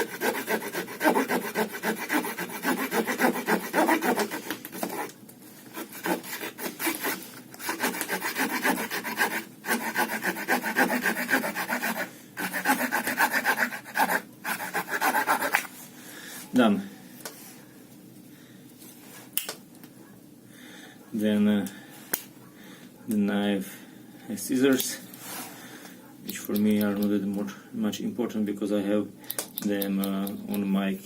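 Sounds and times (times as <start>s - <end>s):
saw blade rasping through log: 0.0s - 5.1s, 5.8s - 15.6s.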